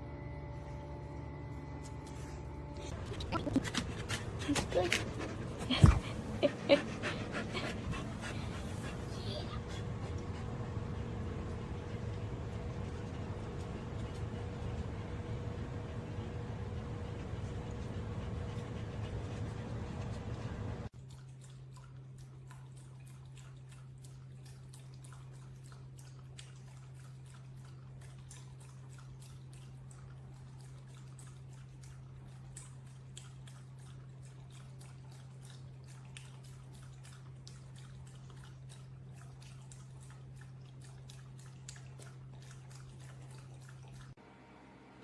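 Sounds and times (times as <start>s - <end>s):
pump hum: 2.9s - 20.9s
water dripping and trickling: 21.0s - 44.2s.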